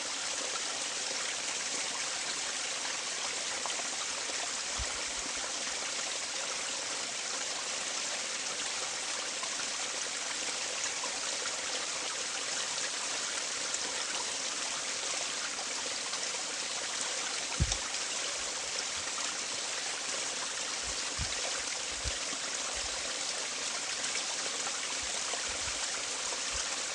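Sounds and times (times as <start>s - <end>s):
running water: 0.0s - 26.9s
low bumps: 17.6s - 17.8s.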